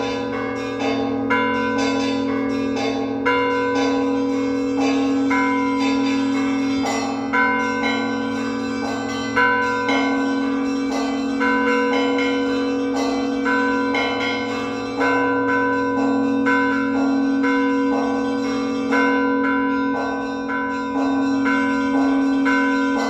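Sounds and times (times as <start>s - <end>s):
large church bell humming: 0.0s - 23.0s
small church bells ringing: 0.0s - 23.0s.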